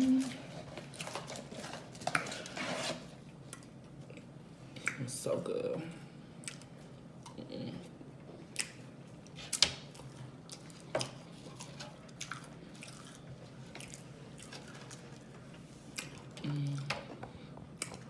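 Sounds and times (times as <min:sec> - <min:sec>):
chewing fried food: 0:08.5 - 0:17.1, 0:17.7 - 0:18.0.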